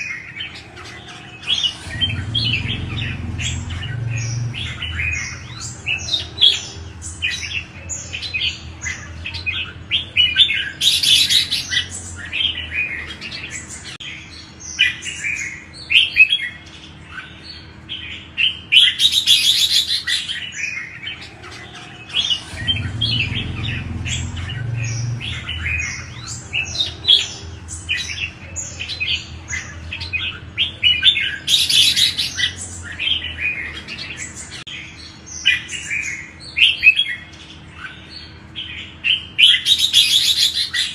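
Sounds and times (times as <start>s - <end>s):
birds singing chirpy phrases: 0.0s - 40.9s.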